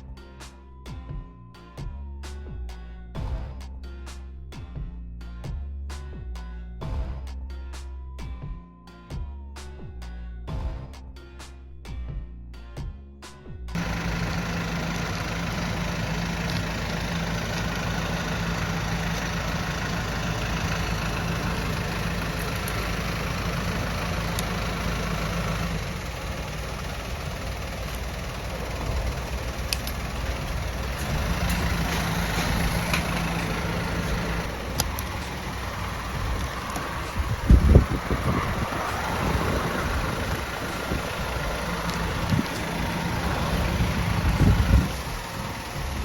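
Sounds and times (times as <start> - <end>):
engine idling: 13.7 - 46.0.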